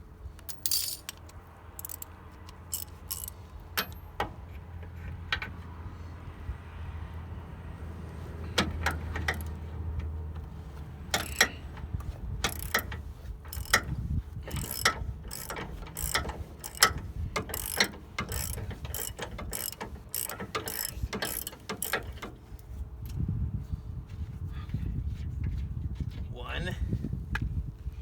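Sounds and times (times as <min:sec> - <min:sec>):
socket ratchet clicking: 0:00.4 - 0:03.4, 0:12.5 - 0:12.8, 0:13.5 - 0:13.9, 0:14.5 - 0:22.2.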